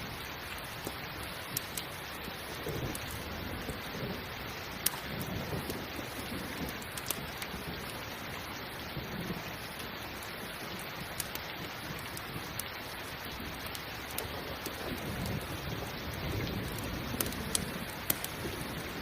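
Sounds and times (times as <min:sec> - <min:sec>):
steady rain hiss: 0:00.0 - 0:19.0
wood fire crackling: 0:00.0 - 0:19.0
fire pops: 0:00.8 - 0:02.0, 0:02.6 - 0:04.2, 0:04.8 - 0:08.0, 0:10.8 - 0:12.8, 0:13.6 - 0:19.0.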